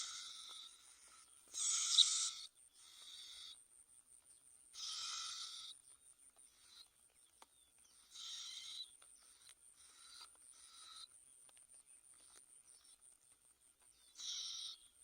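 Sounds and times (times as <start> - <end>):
high thin bird calls: 0.0 - 3.6, 4.7 - 5.8, 8.0 - 11.1.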